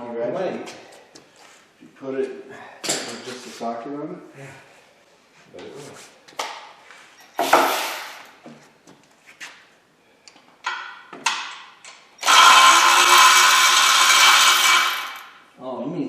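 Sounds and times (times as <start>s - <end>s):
electric ratchet running: 12.2s - 15.4s.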